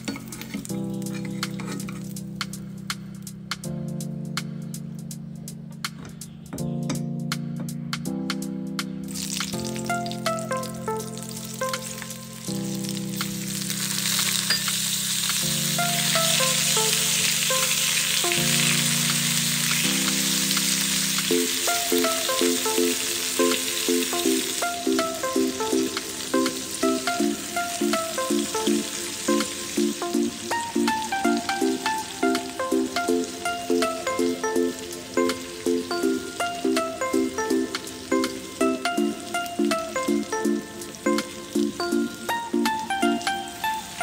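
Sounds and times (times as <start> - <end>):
background music: 0.0 - 44.0
food sizzling in oil: 9.1 - 42.8.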